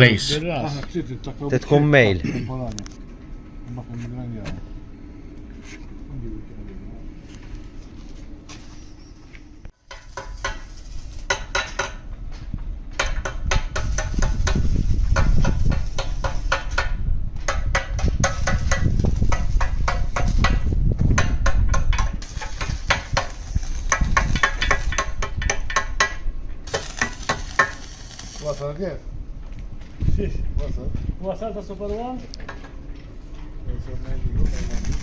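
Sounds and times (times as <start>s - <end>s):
metallic knocks on steel: 13.0s - 14.6s.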